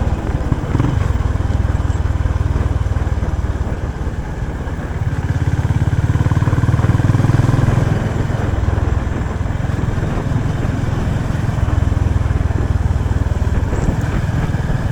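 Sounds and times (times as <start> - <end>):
motorcycle exhaust pulsing: 0.0 - 14.9.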